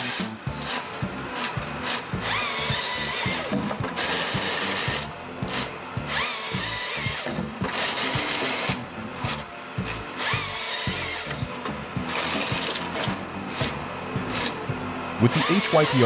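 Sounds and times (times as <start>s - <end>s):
background music with steady beat: 0.0s - 16.0s.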